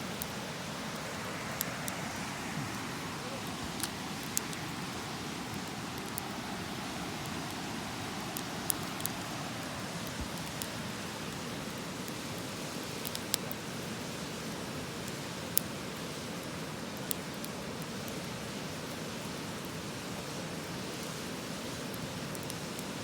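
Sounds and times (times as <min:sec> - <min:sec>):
river rushing: 0:00.0 - 0:13.3
campfire crackling and popping: 0:00.0 - 0:23.0.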